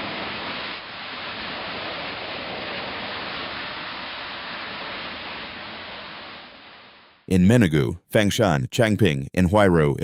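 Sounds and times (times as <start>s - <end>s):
rushing water: 0.0s - 7.0s.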